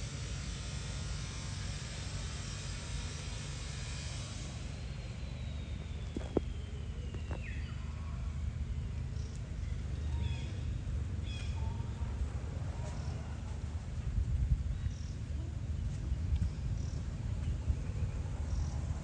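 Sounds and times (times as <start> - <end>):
steady low rumble: 0.0 - 19.0.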